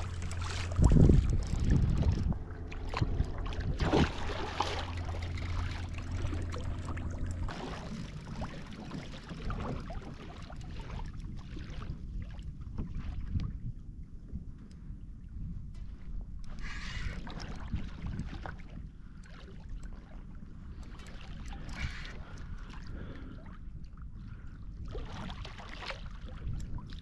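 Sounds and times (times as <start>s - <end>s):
water slapping against kayak hull: 0.0s - 13.4s
wind rumble on microphone: 0.0s - 27.0s.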